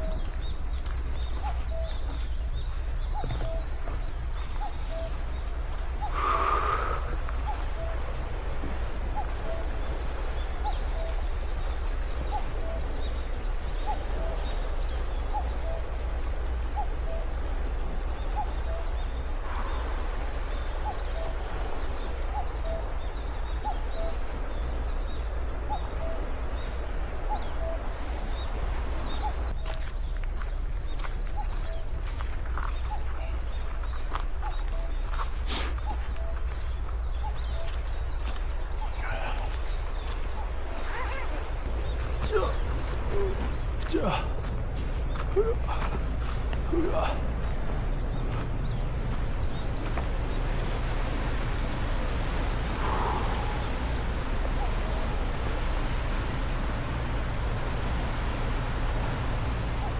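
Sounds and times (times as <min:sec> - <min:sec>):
squeaky footsteps: 0:00.0 - 0:06.1, 0:31.0 - 0:53.5
steady low rumble: 0:00.0 - 0:59.9.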